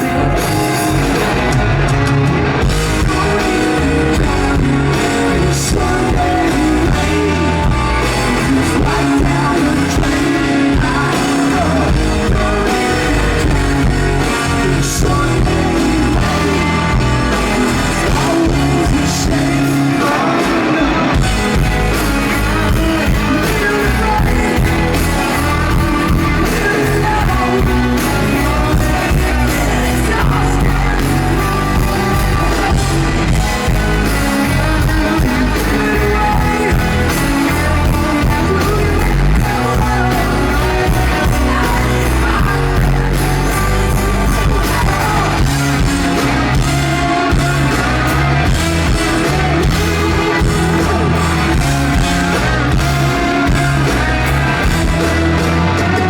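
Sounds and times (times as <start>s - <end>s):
man singing lead vocal: 0.0s - 56.0s
rock band playing live: 0.0s - 56.0s.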